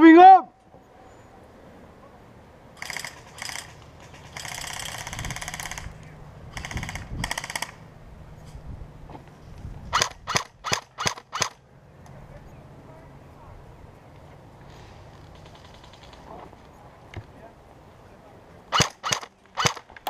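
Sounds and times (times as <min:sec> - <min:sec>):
airsoft gun full-auto bursts: 0:02.8 - 0:06.0, 0:06.6 - 0:07.8, 0:10.0 - 0:11.6, 0:18.7 - 0:19.9
airsoft gun single shots: 0:10.0 - 0:11.6, 0:18.7 - 0:19.9.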